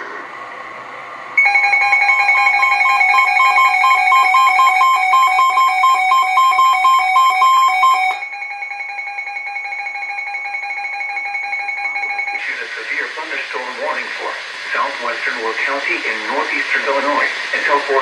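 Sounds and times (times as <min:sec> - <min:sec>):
shrill warbling alert tone: 0:01.4 - 0:08.4
steady alert tone: 0:01.4 - 0:12.6.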